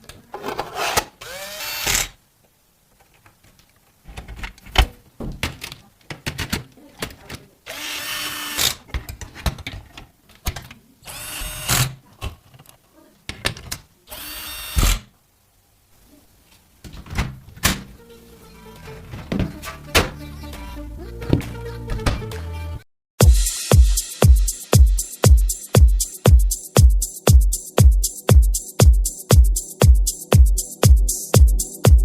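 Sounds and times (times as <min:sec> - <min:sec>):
electric screwdriver whirring: 0:01.2 - 0:02.2.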